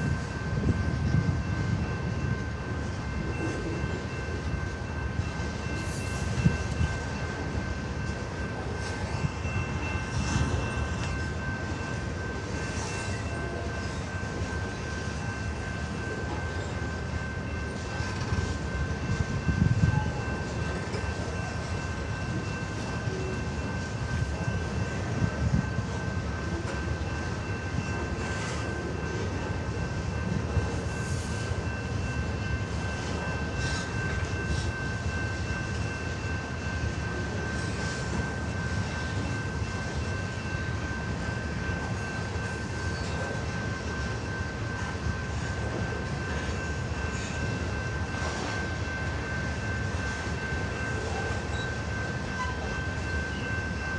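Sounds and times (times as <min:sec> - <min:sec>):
freight train rumbling past: 0:00.0 - 0:53.9.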